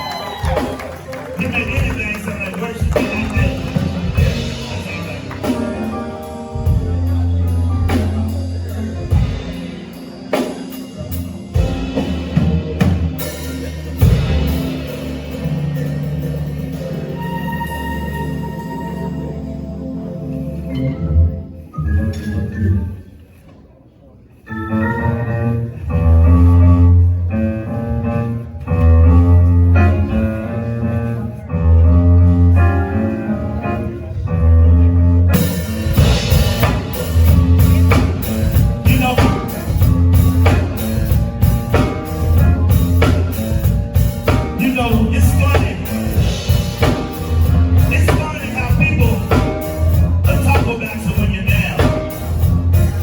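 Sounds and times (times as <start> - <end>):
drum kit: 0.0 - 19.0, 34.8 - 53.0
bass notes: 0.0 - 22.9, 24.5 - 53.0
keyboard chords: 0.0 - 23.0, 24.4 - 53.0.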